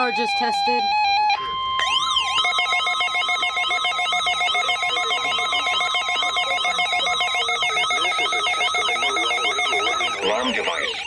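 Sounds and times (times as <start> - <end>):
siren-like sweeping tone: 1.8 - 10.2
steady alert tone: 1.8 - 10.5
rapidly pulsing high tones: 1.8 - 11.0.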